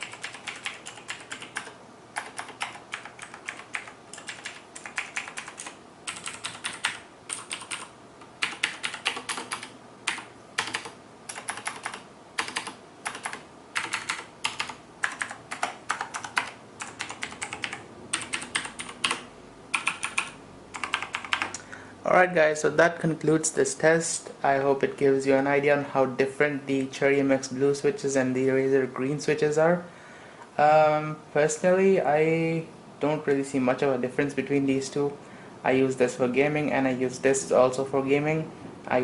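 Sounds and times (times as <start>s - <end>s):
mechanical keyboard typing: 0.0s - 21.6s.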